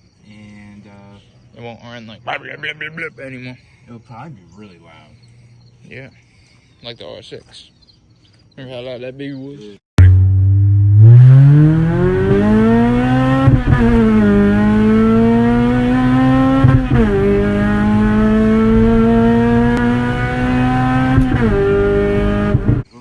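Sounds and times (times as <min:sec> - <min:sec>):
car engine accelerating through gears: 0:10.0 - 0:22.9.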